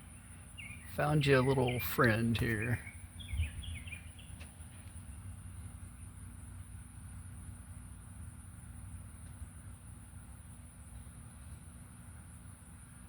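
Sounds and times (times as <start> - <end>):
faint bird chirps: 0.0 - 6.1.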